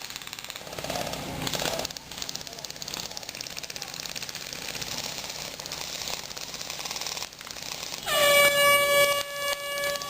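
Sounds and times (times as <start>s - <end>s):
rapid airsoft gunfire: 0.0s - 10.0s
loud horn blast: 8.1s - 10.0s.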